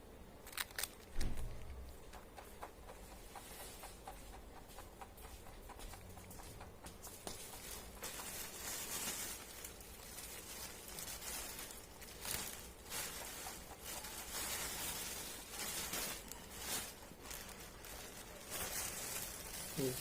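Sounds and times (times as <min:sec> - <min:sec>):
rabbit chewing crunches: 0:00.4 - 0:20.0
soft rustle of food: 0:04.6 - 0:20.0.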